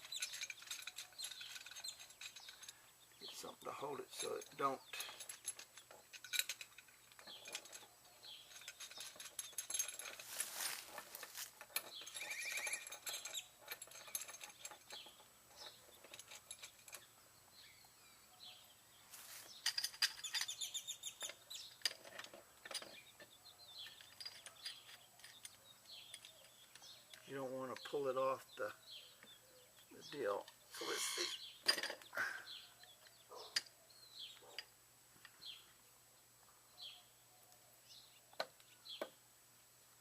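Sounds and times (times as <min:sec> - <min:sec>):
wrenches clinking on metal faucet: 0:00.0 - 0:10.3, 0:11.6 - 0:17.1, 0:19.6 - 0:28.0, 0:30.8 - 0:32.0.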